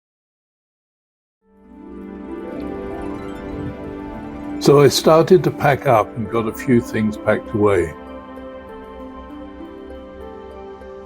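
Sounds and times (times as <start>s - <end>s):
soft background music: 1.5s - 11.0s.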